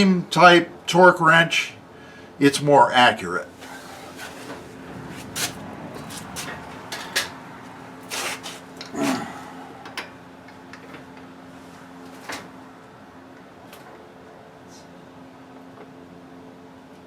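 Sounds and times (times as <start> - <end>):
faint steady hum: 0.0 - 5.2.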